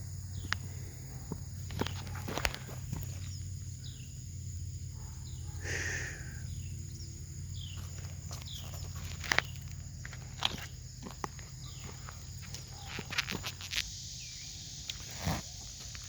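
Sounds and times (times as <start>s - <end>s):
bird chirping: 0.0s - 15.7s.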